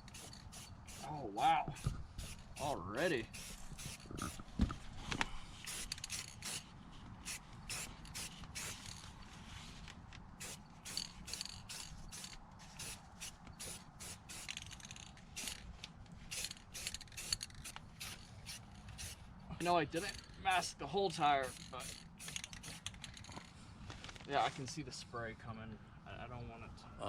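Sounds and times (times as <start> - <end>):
aerosol spray can hissing in spurts: 0.0 - 1.1, 1.8 - 4.4, 5.6 - 8.9, 10.4 - 14.7, 16.3 - 19.2, 21.4 - 22.8.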